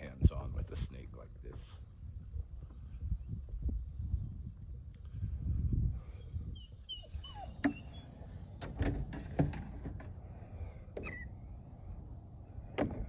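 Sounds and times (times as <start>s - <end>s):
dog whining: 6.6s - 8.2s.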